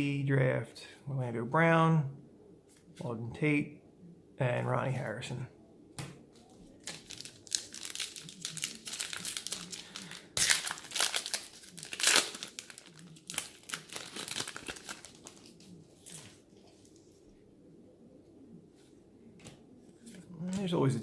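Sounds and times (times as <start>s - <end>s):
plastic foil wrapper crinkling: 6.8s - 17.0s.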